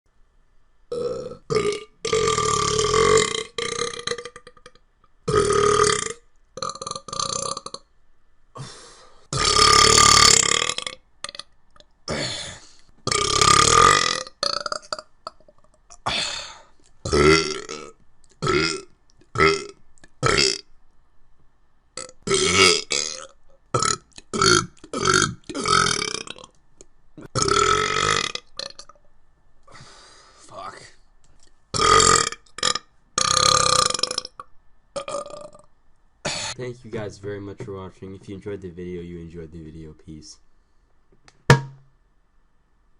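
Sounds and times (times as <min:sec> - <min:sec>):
person burping: 0:00.9 - 0:07.8, 0:09.3 - 0:11.5, 0:12.1 - 0:20.6, 0:22.0 - 0:26.5, 0:27.2 - 0:29.0, 0:31.8 - 0:35.7, 0:36.3 - 0:36.6.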